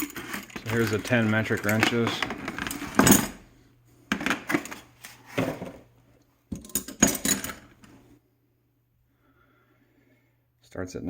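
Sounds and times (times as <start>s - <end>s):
metal wrenches clinking: 0.0s - 3.4s, 6.6s - 7.8s.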